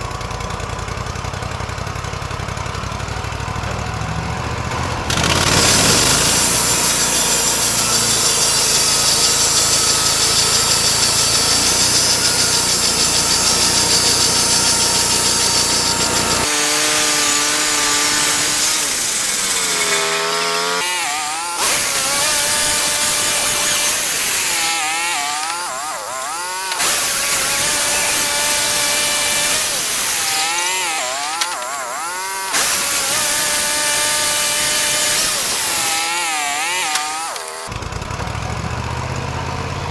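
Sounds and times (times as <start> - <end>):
saw blade whine: 0.0 - 38.7
sawmill engine and blade noise: 0.0 - 39.9.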